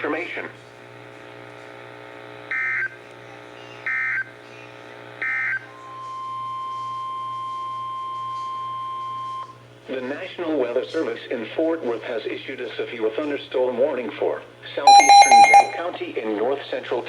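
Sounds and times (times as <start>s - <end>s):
steady single-pitch alert tone: 14.9s - 15.8s.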